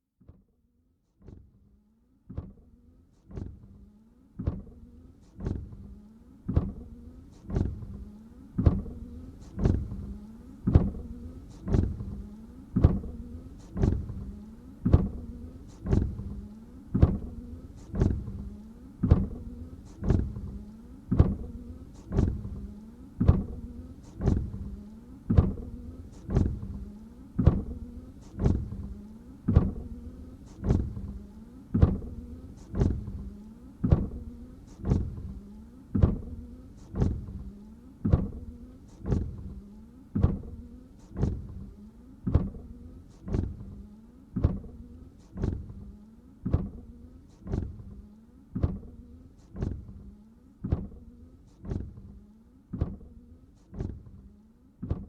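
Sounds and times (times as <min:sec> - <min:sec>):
wiper motor hum: 0:02.3 - 0:55.0
wipers sweeping dry windshield: 0:04.4 - 0:55.0
wiper sharp tap: 0:29.5 - 0:35.4.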